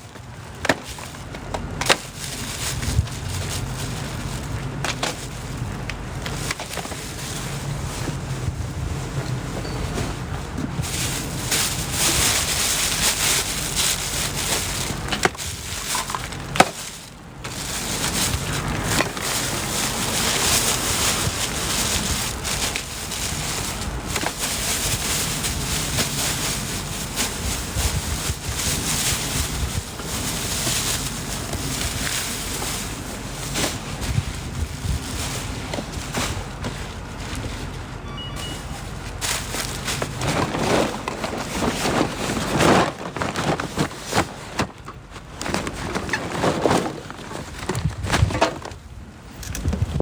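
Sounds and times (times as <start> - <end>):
wind buffeting microphone: 2.3 - 16.6, 17.2 - 38.0, 47.6 - 50.0.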